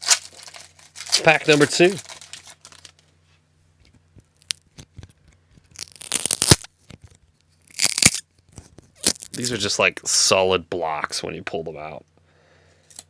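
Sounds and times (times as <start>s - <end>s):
wrapper tearing: 0.0s - 3.0s, 4.4s - 9.6s
wrapper crinkling: 0.0s - 3.1s, 4.3s - 9.6s.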